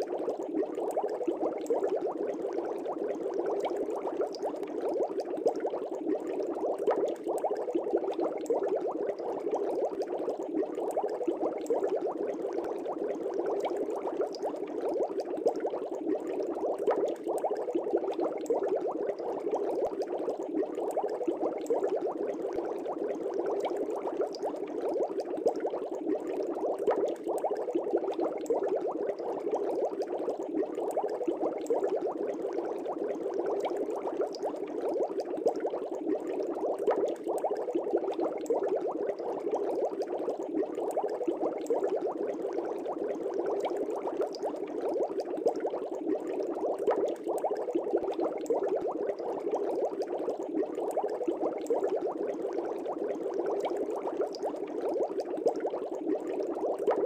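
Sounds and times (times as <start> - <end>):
aquarium air bubbler bubbling: 0.0 - 57.0.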